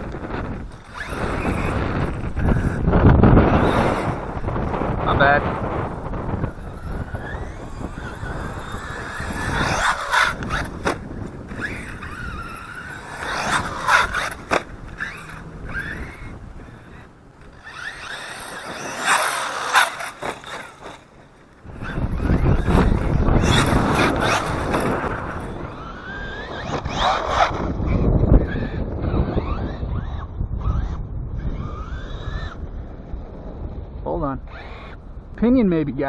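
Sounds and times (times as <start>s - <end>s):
electric motor whining: 0.0s - 35.4s.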